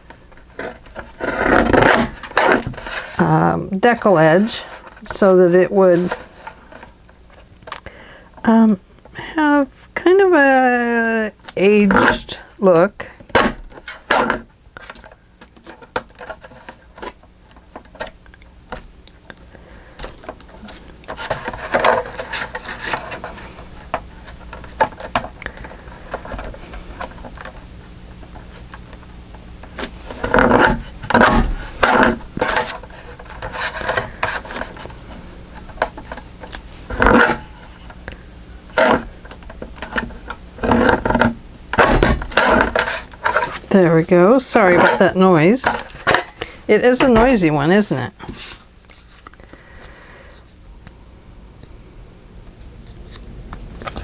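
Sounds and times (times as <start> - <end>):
craft tool working on paper: 0.6 - 3.3.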